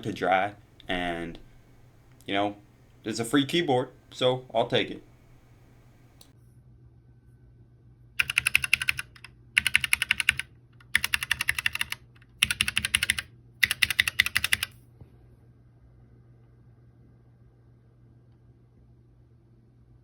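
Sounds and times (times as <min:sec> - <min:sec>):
rapid keyboard key clicks: 0:08.2 - 0:14.7.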